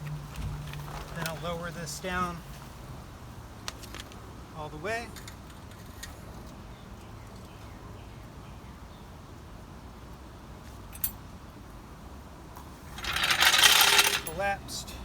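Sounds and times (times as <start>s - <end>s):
jack collapsing metallic clatter: 13.0s - 14.4s.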